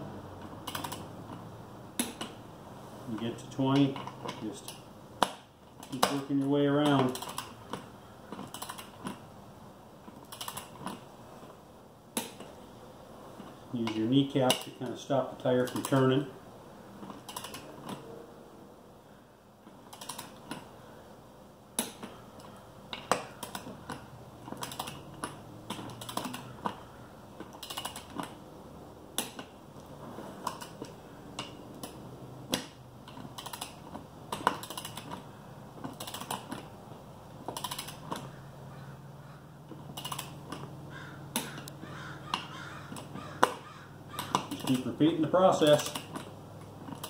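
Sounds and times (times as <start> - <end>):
torque wrench ratchet clicks: 37.5 - 38.1, 40.0 - 40.4.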